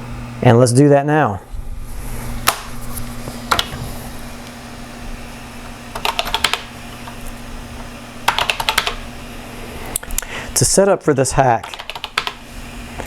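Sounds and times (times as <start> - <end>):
steady low hum: 0.0 - 13.0
computer keyboard typing: 3.5 - 3.8, 5.9 - 7.2, 8.2 - 9.1, 11.6 - 12.4.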